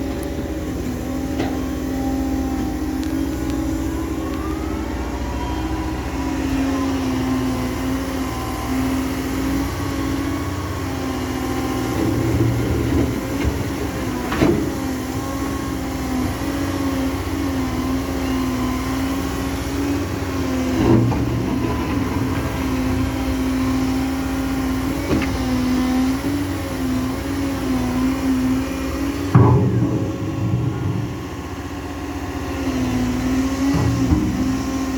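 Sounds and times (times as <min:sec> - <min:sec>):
excavator diesel engine running: 0:00.0 - 0:34.9
sharp knocks: 0:29.3 - 0:31.8.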